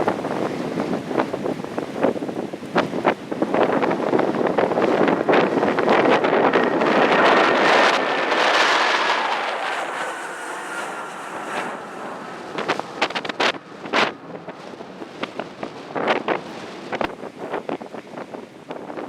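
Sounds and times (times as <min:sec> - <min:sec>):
jet airliner taking off: 0:00.0 - 0:19.0
wind buffeting microphone: 0:00.0 - 0:19.0
faint falling engine whine: 0:03.6 - 0:17.0.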